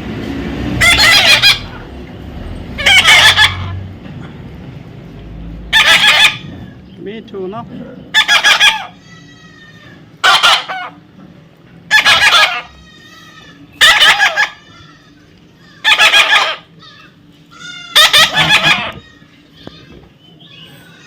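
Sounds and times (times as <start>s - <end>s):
parrot screeching: 0.8s - 1.8s, 2.8s - 3.8s, 5.7s - 6.8s, 8.1s - 11.0s, 11.9s - 21.0s.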